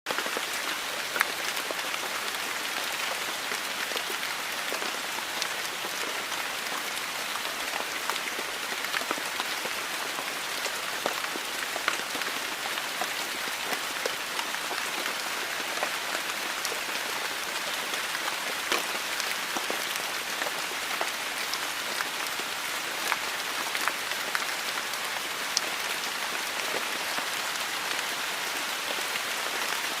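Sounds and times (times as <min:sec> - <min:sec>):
heavy rain: 0:00.1 - 0:30.0
raindrops ticking on a surface: 0:07.7 - 0:30.0.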